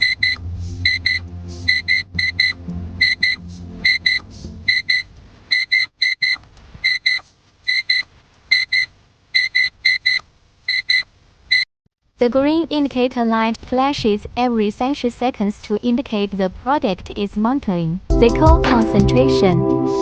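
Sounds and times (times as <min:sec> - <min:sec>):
alarm beeping in clusters: 0:00.0 - 0:08.0.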